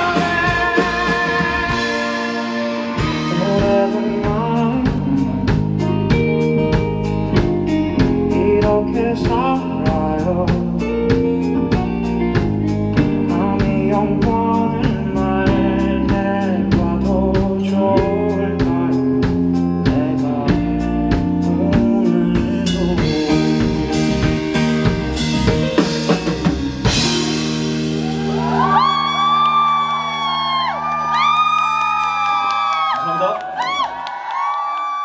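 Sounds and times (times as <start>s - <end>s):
person singing: 0.0s - 6.2s, 7.9s - 24.5s
drums steady beat: 0.0s - 29.6s
live rock band playing: 0.0s - 33.2s.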